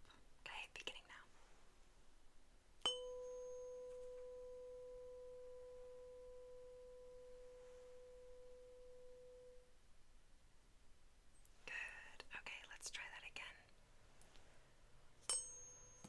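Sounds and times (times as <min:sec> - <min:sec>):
tuning fork tap: 0:02.8 - 0:09.7
tuning fork pure tone: 0:02.8 - 0:10.1, 0:15.2 - 0:16.0.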